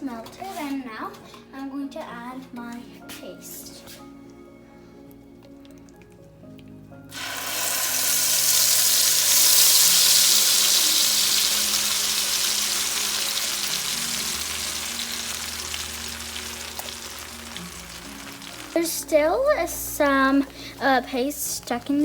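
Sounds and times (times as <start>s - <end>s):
paste sizzling in butter: 7.1s - 22.0s.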